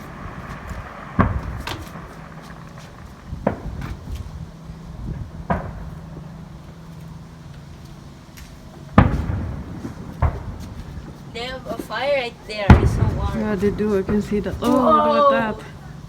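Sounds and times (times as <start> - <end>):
faint firework pops: 0.0 - 6.4, 8.4 - 12.0, 12.7 - 15.0
firework shells booming: 0.0 - 7.1, 8.5 - 16.0.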